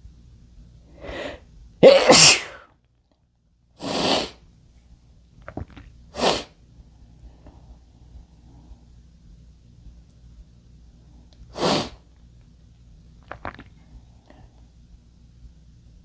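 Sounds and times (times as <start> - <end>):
breathy bursts of air: 1.0 - 1.4, 3.8 - 4.4, 11.5 - 12.0
man sneezing: 1.8 - 2.7.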